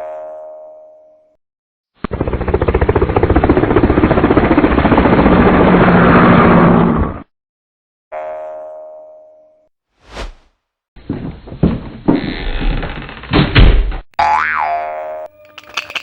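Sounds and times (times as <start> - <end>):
cartoon boing: 14.2 - 15.2.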